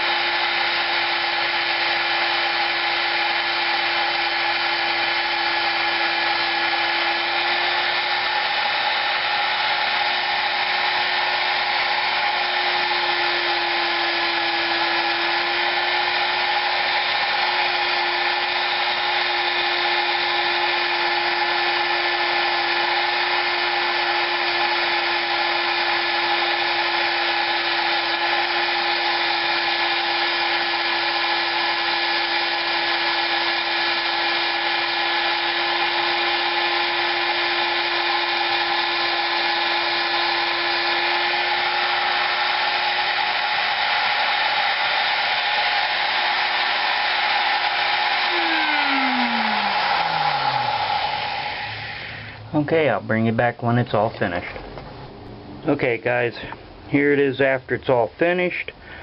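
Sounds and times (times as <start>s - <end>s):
rotary tool grinding metal: 0.0s - 52.4s.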